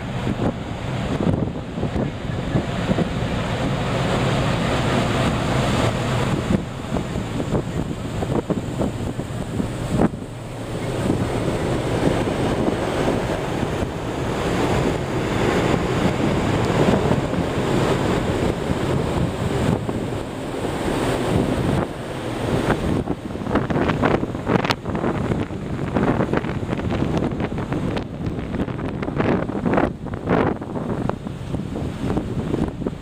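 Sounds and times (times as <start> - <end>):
sea water rushing along ship: 0.0 - 33.0
wind buffeting microphone: 0.0 - 33.0.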